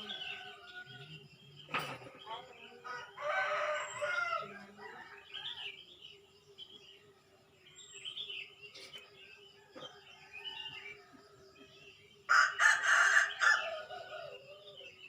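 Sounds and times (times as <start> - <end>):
bird chirps: 5.3 - 12.3.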